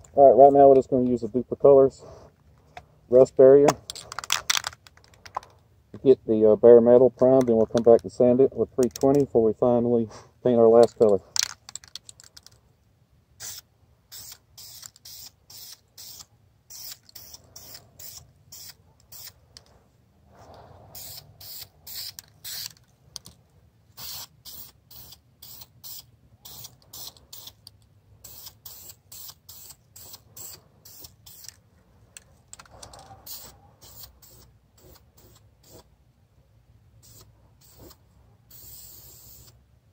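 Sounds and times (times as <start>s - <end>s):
aerosol spray can hissing: 13.4s - 19.4s, 20.9s - 22.8s, 24.0s - 27.6s, 28.2s - 31.5s, 33.3s - 35.8s, 37.0s - 39.6s.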